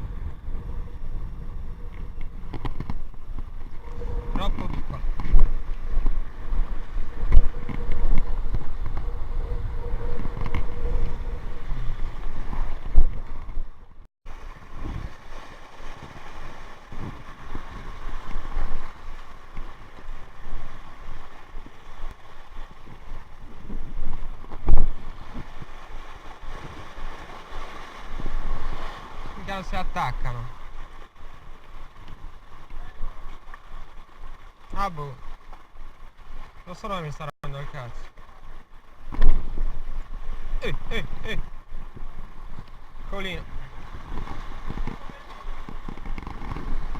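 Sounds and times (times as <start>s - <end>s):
wind buffeting microphone: 0.0s - 29.6s, 38.4s - 46.9s
waves surging on rocks: 14.3s - 23.2s, 24.6s - 46.0s.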